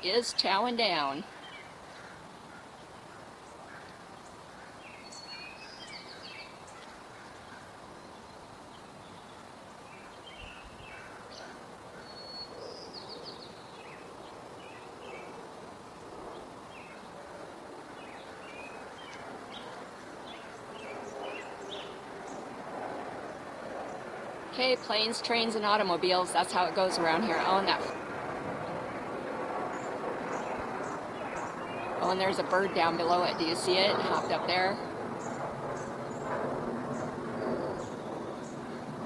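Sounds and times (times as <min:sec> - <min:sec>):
distant engine noise: 0:00.0 - 0:05.2, 0:13.9 - 0:39.0
songbirds chirping: 0:00.0 - 0:22.6, 0:23.8 - 0:39.0
outdoor background noise: 0:00.0 - 0:39.0.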